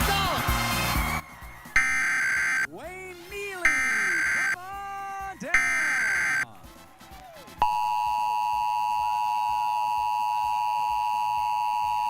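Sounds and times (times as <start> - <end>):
steady two-tone alert signal: 1.8 - 2.7, 3.6 - 4.6, 5.5 - 6.4, 7.6 - 12.0.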